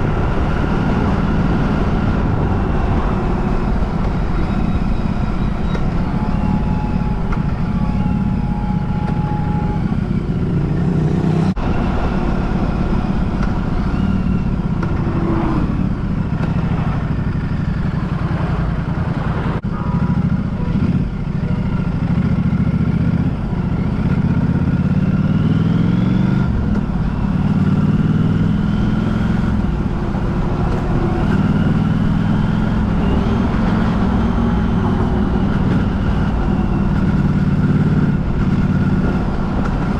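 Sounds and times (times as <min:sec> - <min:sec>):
vehicle engine running: 0:00.0 - 0:39.9.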